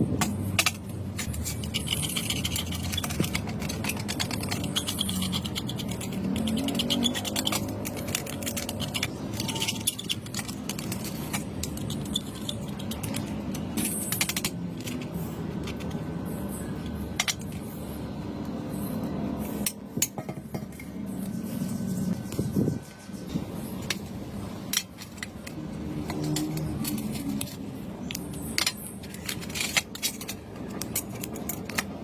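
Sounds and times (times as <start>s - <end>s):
small hard objects clinking: 0.2s - 15.4s.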